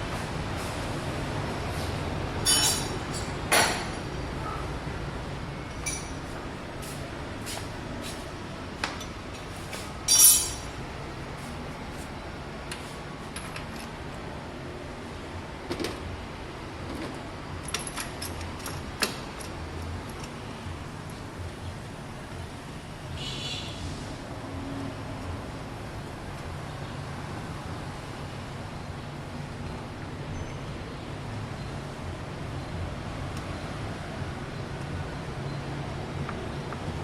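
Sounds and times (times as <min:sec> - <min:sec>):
steady background noise: 0:00.0 - 0:37.0
metal tools clinking: 0:02.4 - 0:03.3, 0:05.8 - 0:06.4, 0:08.9 - 0:10.8, 0:17.6 - 0:19.5.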